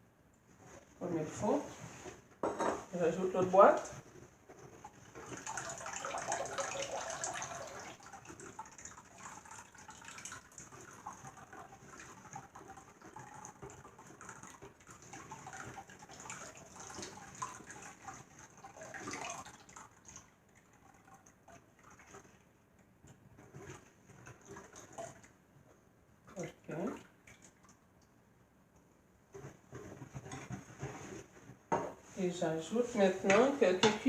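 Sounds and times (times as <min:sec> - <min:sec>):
batter sloshing: 0:00.5 - 0:25.4
milk pouring into a bowl: 0:03.8 - 0:25.4.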